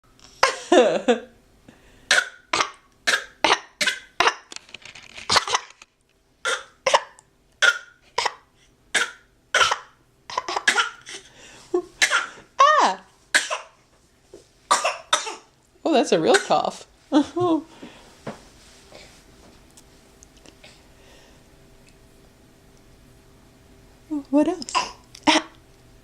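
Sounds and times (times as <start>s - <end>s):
child fake coughing: 2.1s - 4.5s, 6.4s - 11.2s, 12.0s - 13.8s, 14.7s - 15.5s, 16.3s - 16.7s, 24.7s - 25.5s.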